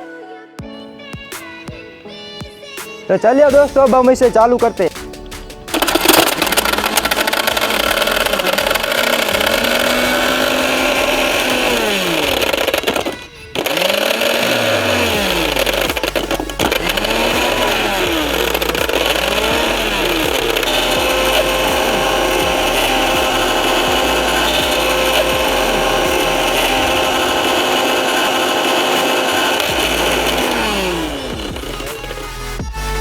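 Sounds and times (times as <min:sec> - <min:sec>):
mixer grinder running: 0:05.6 - 0:32.4.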